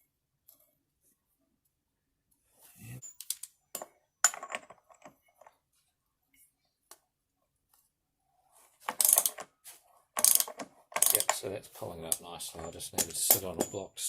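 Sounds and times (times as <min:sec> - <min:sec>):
small steel parts clinking: 0:03.0 - 0:05.5, 0:08.9 - 0:09.4, 0:10.2 - 0:11.4, 0:12.5 - 0:14.0.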